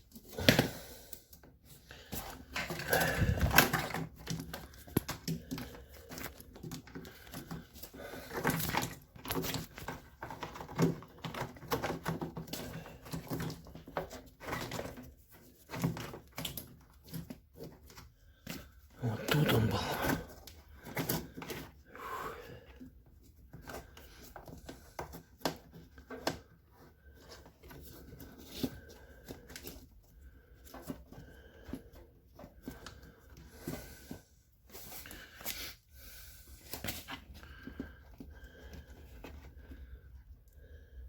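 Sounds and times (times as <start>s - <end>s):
hands handling parts and tools: 0.0s - 21.9s.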